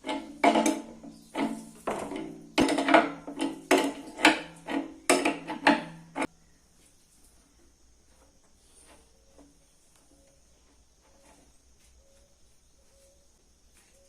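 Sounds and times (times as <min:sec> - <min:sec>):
metal parts clanking: 0:00.0 - 0:06.3.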